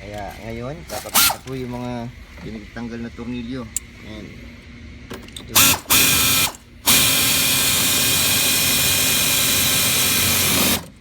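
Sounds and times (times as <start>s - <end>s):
power drill driving screws: 1.0s - 1.4s, 5.6s - 10.9s.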